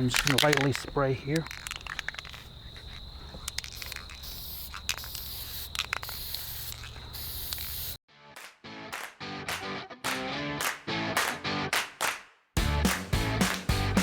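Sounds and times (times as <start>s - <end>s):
spray can clicks: 0.0s - 8.0s
spray paint can hissing: 0.0s - 8.0s
guitar music: 8.7s - 11.7s.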